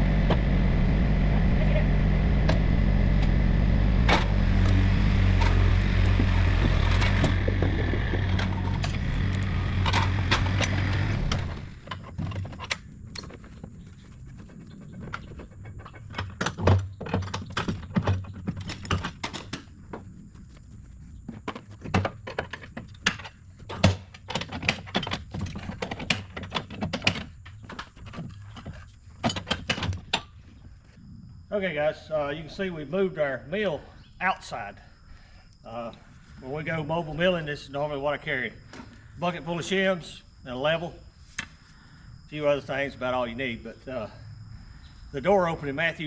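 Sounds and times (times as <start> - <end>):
engine running steadily: 0.0 - 16.4.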